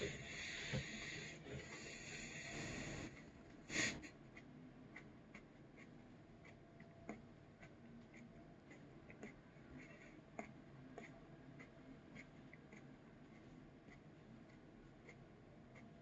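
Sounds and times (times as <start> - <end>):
breathy hiss: 0.0 - 4.1.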